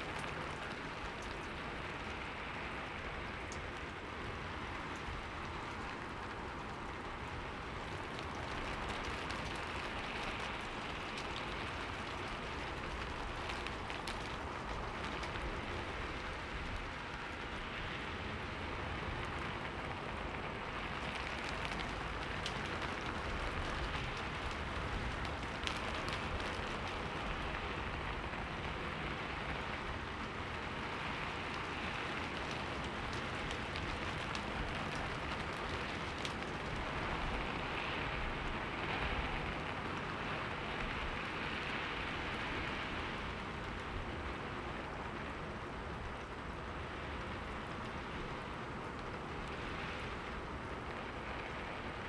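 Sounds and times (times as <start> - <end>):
rain pattering on a window: 0.0 - 52.0.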